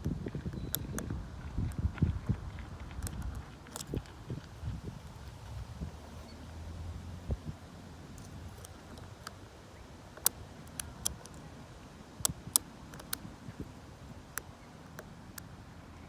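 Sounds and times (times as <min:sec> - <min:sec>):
wind rumble on microphone: 0:00.0 - 0:09.5
lock pick clicking in lock: 0:12.2 - 0:13.2.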